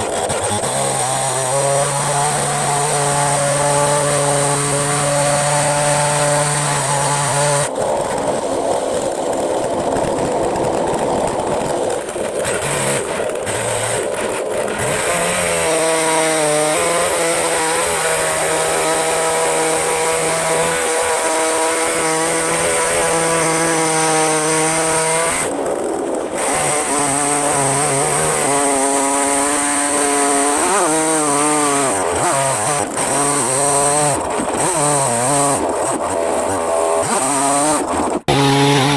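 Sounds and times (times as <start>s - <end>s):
chainsaw ripping a log: 0.0s - 38.9s.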